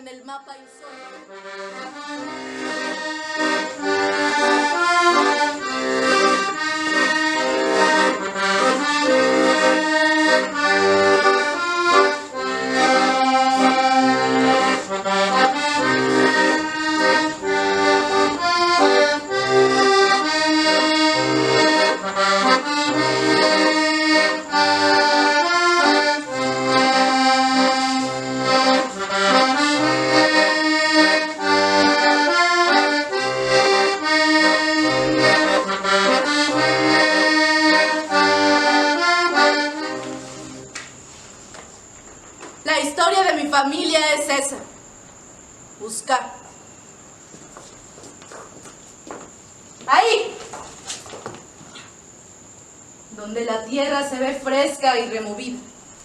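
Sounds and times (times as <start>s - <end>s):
accordion playing a tune: 0.0s - 41.4s.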